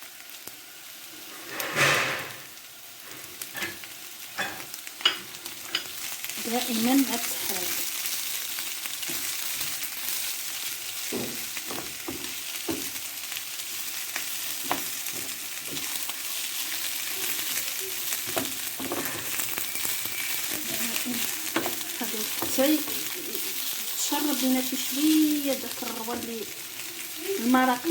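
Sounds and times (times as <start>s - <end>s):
rice sizzling in a pan: 0.0s - 27.9s
utensil scraping a pan: 1.3s - 2.5s, 18.2s - 23.4s.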